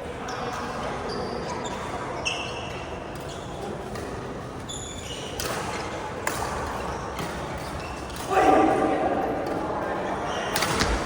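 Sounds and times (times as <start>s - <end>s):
shoes squeaking on court floor: 0.3s - 4.0s, 4.6s - 5.8s.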